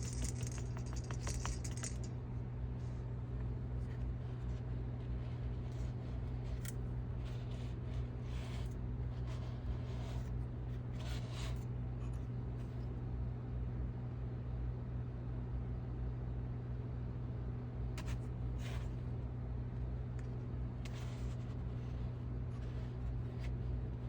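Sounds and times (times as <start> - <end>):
small parts scratching and clicking: 0.0 - 2.2, 3.9 - 10.3, 20.8 - 24.0
steady low hum: 0.0 - 24.0.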